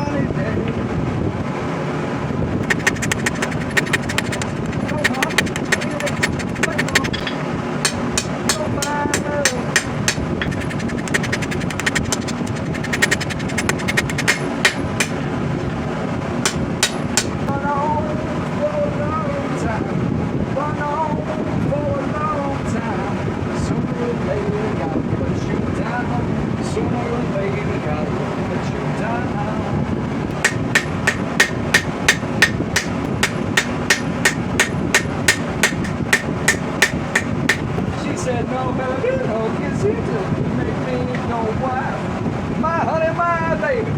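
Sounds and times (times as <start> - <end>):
steady rumbling background: 0.0 - 23.3, 24.0 - 43.8
hammer striking metal: 2.7 - 15.2, 16.5 - 17.4, 30.4 - 37.7.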